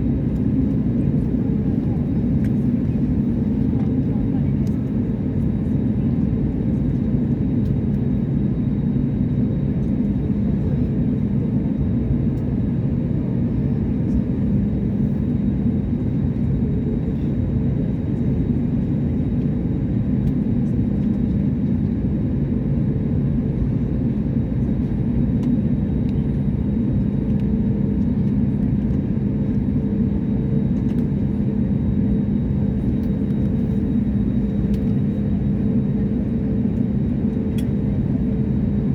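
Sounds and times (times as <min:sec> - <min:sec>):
airliner cabin engine rumble: 0:00.0 - 0:38.9.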